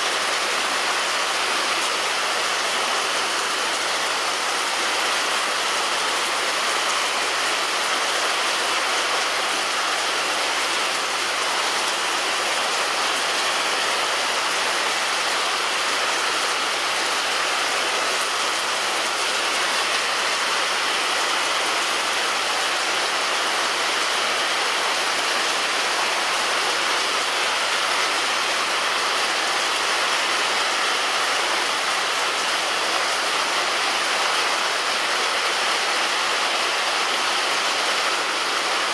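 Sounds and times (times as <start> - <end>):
heavy rain on a roof: 0.0 - 38.9.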